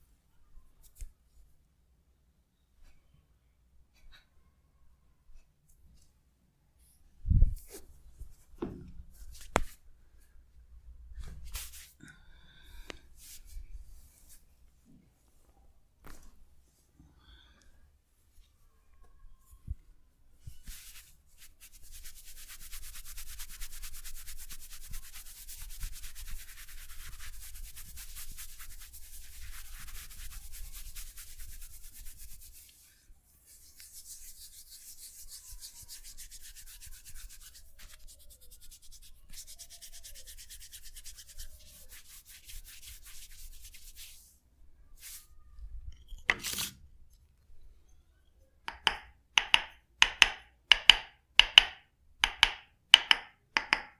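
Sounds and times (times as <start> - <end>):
hands rubbing skin: 9.1 - 9.8, 11.2 - 12.0, 12.9 - 14.4, 20.5 - 44.4, 45.0 - 45.4.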